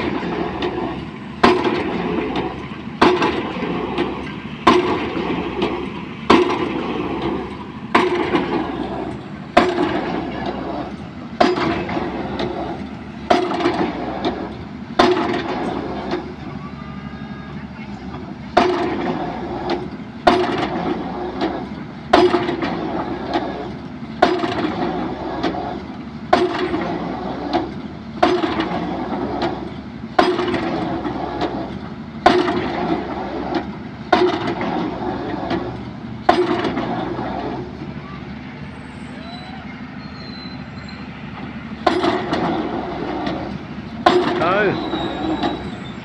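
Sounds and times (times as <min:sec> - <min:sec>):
steady machine noise: 0:00.0 - 0:46.0
drop hammer clanging on pile: 0:41.8 - 0:42.6.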